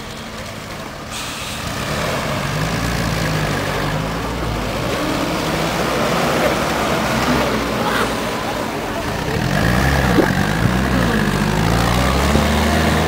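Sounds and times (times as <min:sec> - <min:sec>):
jeep engine running: 0:03.7 - 0:13.0.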